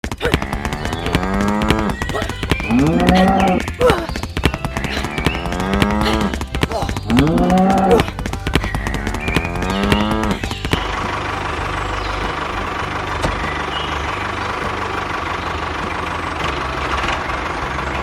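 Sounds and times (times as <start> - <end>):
steady low hum: 0.0 - 18.0
cattle mooing: 0.3 - 3.8, 4.8 - 8.1, 8.9 - 15.8.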